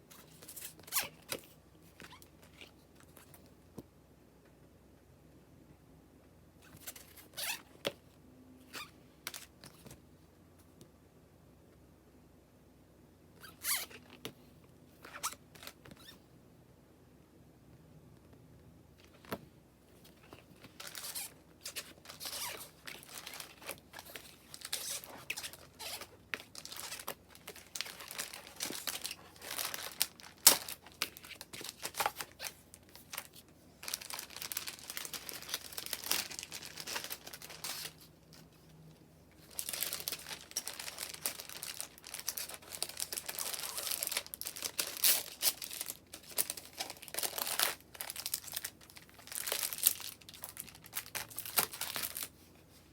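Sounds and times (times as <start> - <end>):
packaging wrapper crinkling: 20.2 - 38.5, 39.4 - 52.3.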